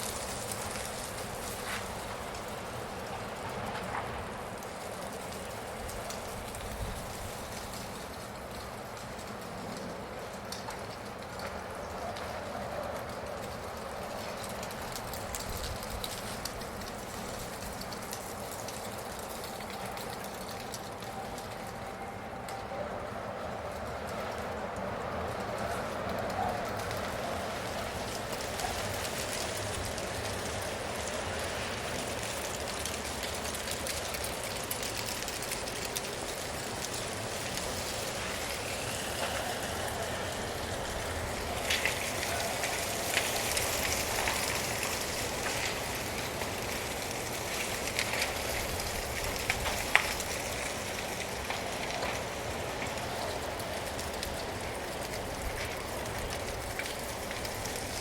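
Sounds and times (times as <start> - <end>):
dry leaves rustling: 23.7 - 58.0.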